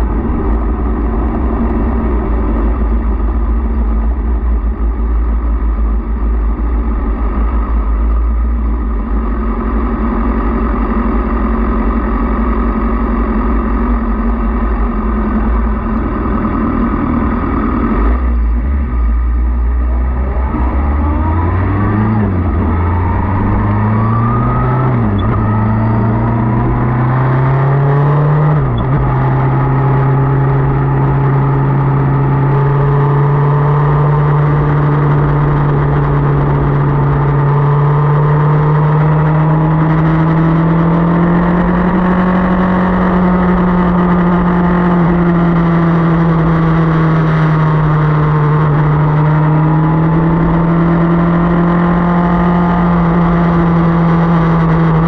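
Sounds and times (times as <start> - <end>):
motorcycle engine accelerating: 0.0 - 55.0.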